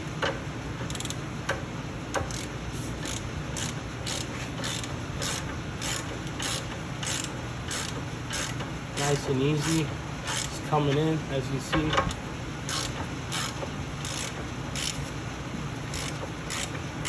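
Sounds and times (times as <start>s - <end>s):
ratchet wrench clicking: 0.9s - 1.2s, 2.2s - 8.6s, 9.6s - 10.5s, 12.7s - 15.0s, 15.9s - 16.7s.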